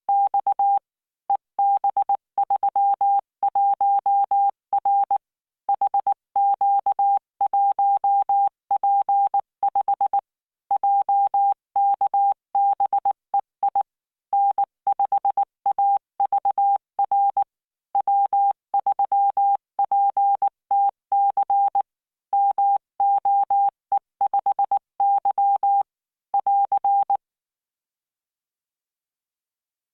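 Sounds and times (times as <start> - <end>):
morse code beeps: 22.4 - 25.8.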